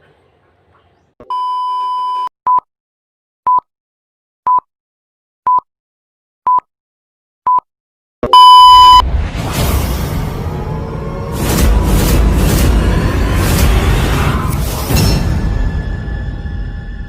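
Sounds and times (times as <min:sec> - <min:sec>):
electronic countdown beeps: 0:08.3 - 0:09.0.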